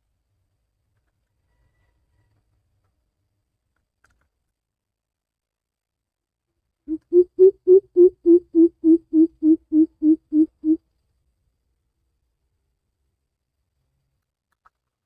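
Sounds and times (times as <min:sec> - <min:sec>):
bird giving low hoots: 0:06.9 - 0:10.8.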